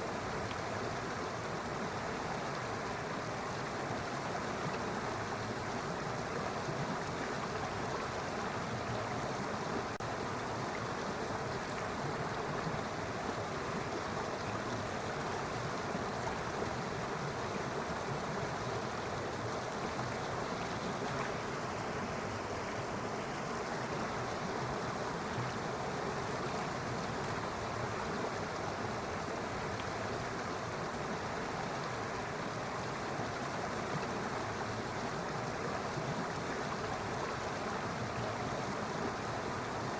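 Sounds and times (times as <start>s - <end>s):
stream flowing water: 0.0s - 39.9s.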